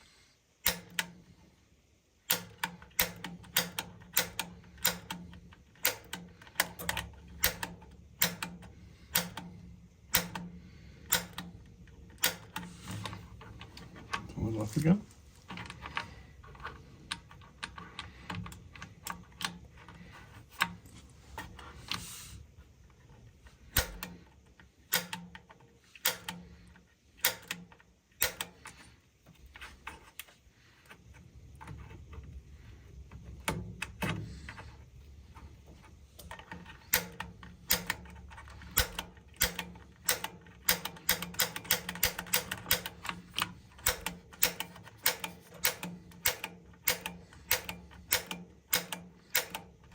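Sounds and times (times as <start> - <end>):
piezo igniter clicking: 0.6 - 1.4, 2.2 - 14.8, 23.0 - 29.0, 35.4 - 49.9.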